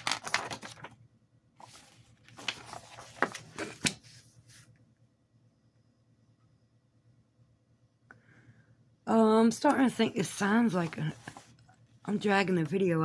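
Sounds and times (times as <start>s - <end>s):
paper rustling: 0.0s - 1.0s, 1.6s - 4.7s, 10.7s - 11.6s.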